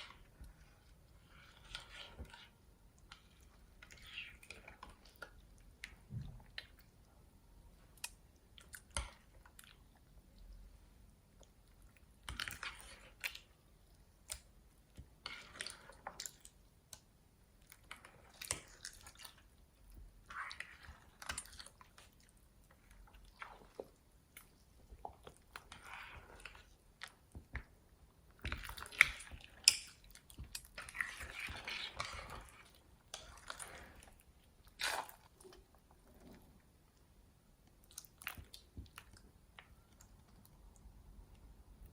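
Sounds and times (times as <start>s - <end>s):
slime squishing: 11.4s - 37.0s.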